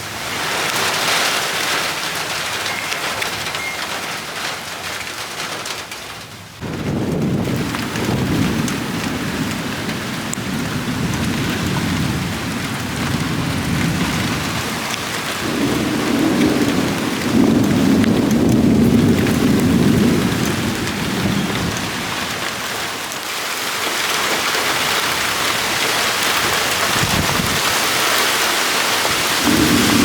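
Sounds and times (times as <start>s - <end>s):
heavy rain: 0.0s - 30.0s
thunder rumbling: 6.6s - 22.8s, 29.0s - 30.0s.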